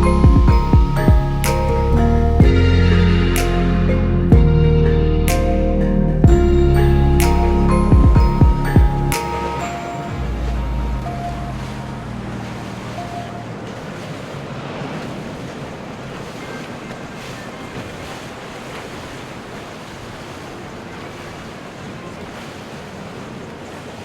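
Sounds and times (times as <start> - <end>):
water washing: 0.0 - 4.5, 6.2 - 24.0
background music: 0.0 - 14.1.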